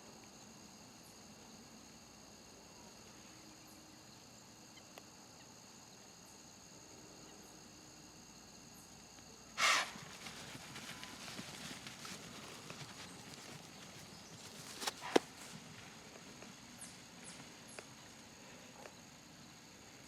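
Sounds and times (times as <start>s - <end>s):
crickets chirping: 0.0s - 20.0s
deer alarm snort: 9.6s - 10.1s
rustling and footsteps: 9.6s - 19.5s.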